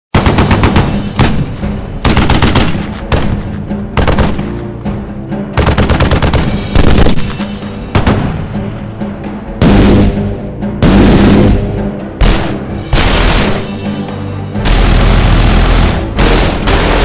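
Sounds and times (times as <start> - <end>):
machine gun bursts: 14.7 - 17.0.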